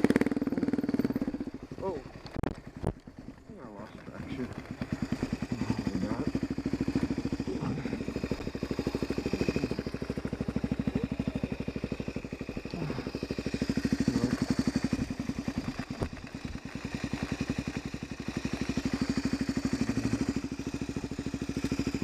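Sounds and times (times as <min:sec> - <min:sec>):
dirt bike engine at low revs: 0:00.0 - 0:22.0.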